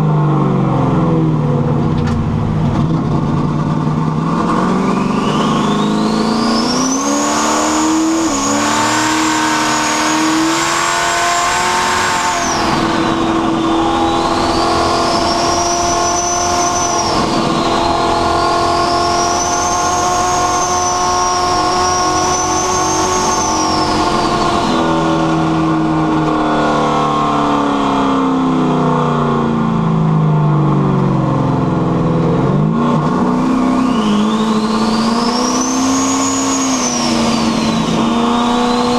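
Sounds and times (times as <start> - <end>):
car engine accelerating: 0.0 - 38.9
turbo whistle: 4.7 - 25.2, 33.6 - 38.9.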